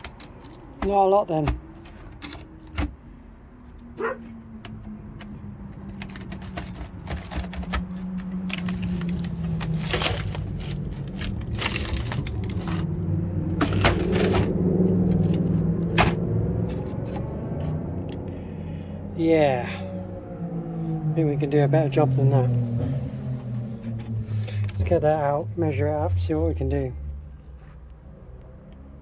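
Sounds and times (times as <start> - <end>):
rotten wood cracking and crunching: 5.8 - 17.3.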